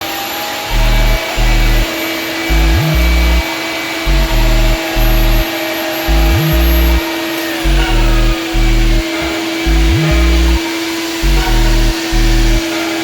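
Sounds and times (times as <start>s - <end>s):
drywall sanding machine running: 0.1s - 13.0s
bass-heavy background music: 0.7s - 1.9s, 2.5s - 3.4s, 4.1s - 5.5s, 6.1s - 7.0s, 7.7s - 10.6s, 11.2s - 12.6s.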